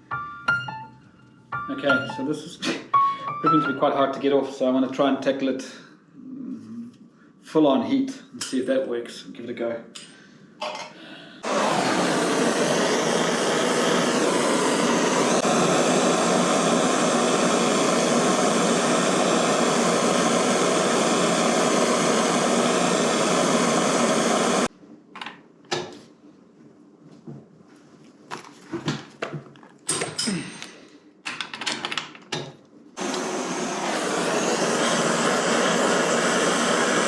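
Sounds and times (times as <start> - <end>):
heat gun fan whirring: 11.4 - 24.7, 33.0 - 37.0.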